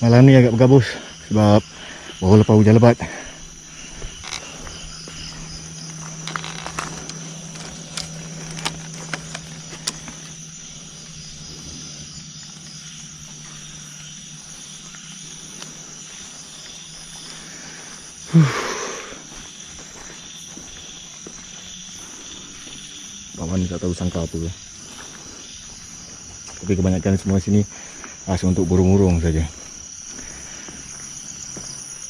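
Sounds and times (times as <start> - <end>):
crickets chirring: 0.0 - 32.0
sharp clicks: 6.0 - 10.4.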